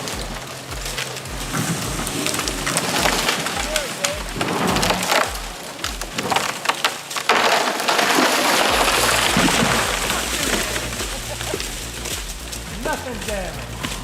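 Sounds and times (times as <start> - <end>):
wood cracking and splintering: 0.0 - 14.0
low steady hum: 8.6 - 14.0.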